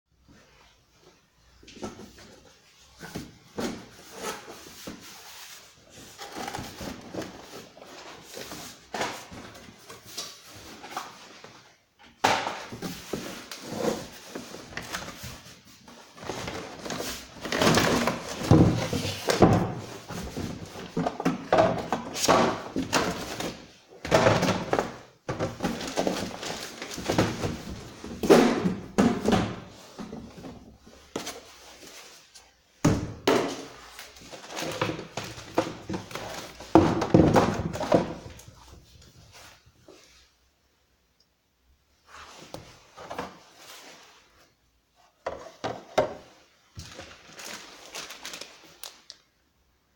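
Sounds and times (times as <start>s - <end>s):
cardboard and packaging rustling: 0.5s - 40.4s, 42.1s - 49.3s
box thunks: 17.5s - 19.9s.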